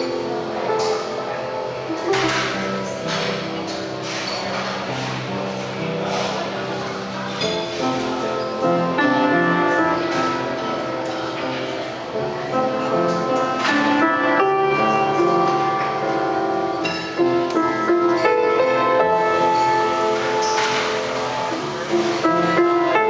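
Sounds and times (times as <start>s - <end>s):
piano playing: 0.0s - 23.0s.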